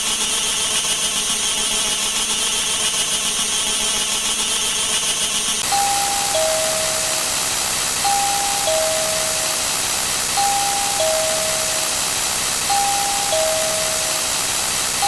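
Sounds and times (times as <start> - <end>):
steady loud hiss: 5.6 - 15.0
two-note electronic tone: 5.6 - 15.0.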